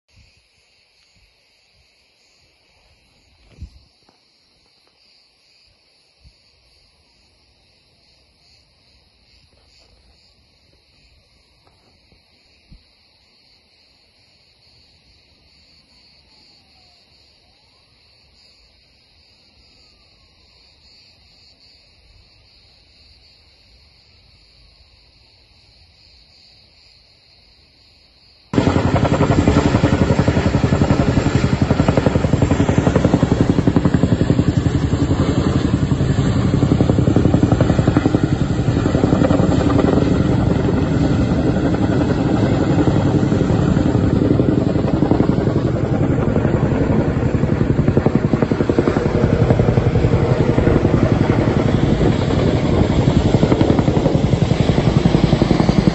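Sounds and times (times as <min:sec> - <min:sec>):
faint insect chorus: 0:00.1 - 0:55.9
helicopter rotor and turbine: 0:28.5 - 0:55.9.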